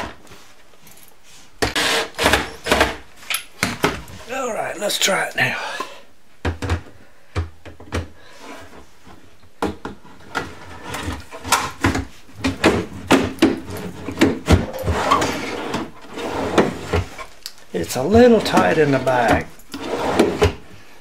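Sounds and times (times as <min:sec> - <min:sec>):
shelf rubbing scrapes: 0:10.0 - 0:17.3, 0:18.0 - 0:20.8.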